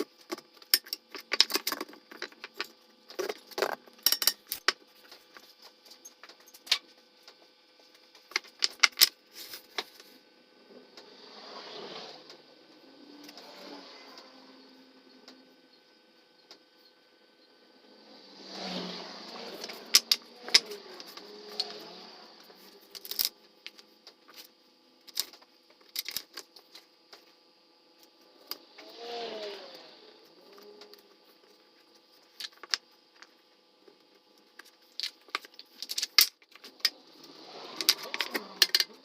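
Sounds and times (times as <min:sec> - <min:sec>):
wooden parts clicking and knocking: 0:00.0 - 0:04.8, 0:08.2 - 0:09.2, 0:19.6 - 0:21.8, 0:34.6 - 0:37.0, 0:37.8 - 0:39.0.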